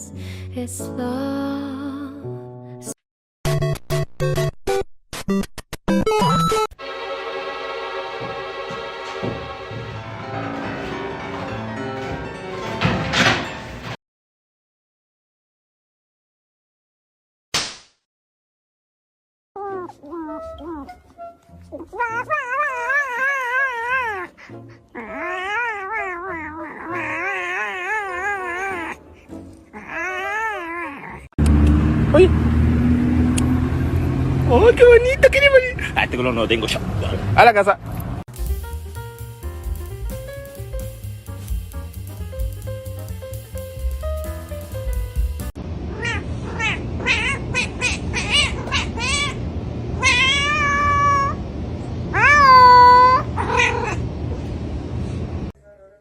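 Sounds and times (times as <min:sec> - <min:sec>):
cat yowling: 0:19.6 - 0:29.1, 0:29.7 - 0:31.4, 0:45.9 - 0:49.4, 0:50.0 - 0:51.4, 0:52.1 - 0:54.0.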